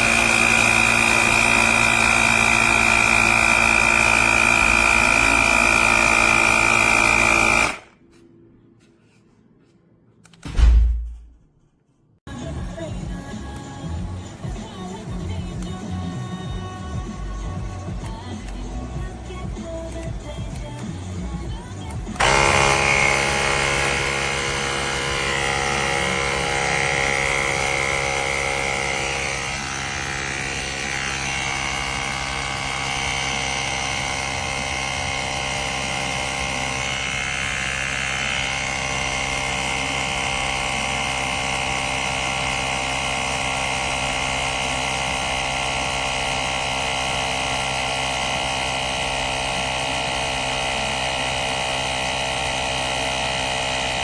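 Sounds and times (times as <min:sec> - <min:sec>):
tire inflator compressor buzzing: 0:00.0 - 0:08.2, 0:13.0 - 0:54.0.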